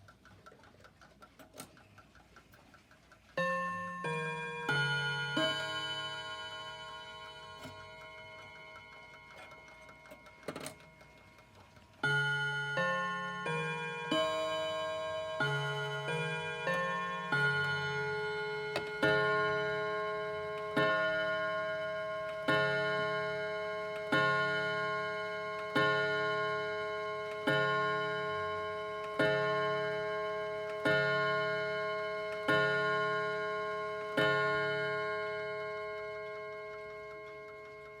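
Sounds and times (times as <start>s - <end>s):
clock chiming strokes: 3.2s - 38.0s.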